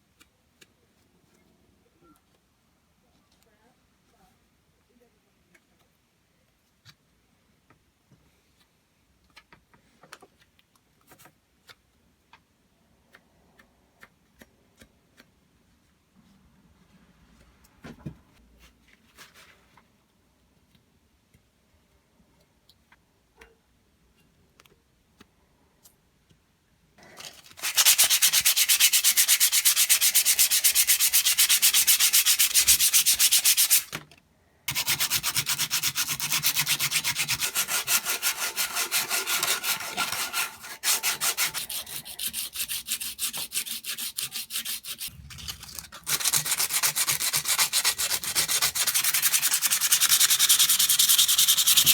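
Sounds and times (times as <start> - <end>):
sanding in rapid strokes: 27.6 - 33.9, 34.7 - 51.9.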